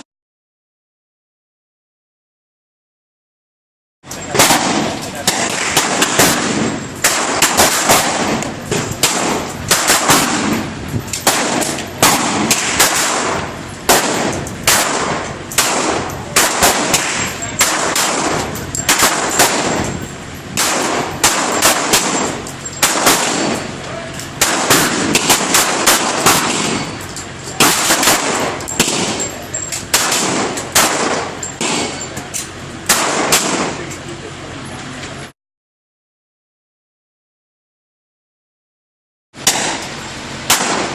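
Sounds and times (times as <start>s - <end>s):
gunshots: 4.2s - 20.0s, 20.6s - 27.0s, 27.6s - 32.1s, 32.9s - 33.9s, 39.4s - 40.9s.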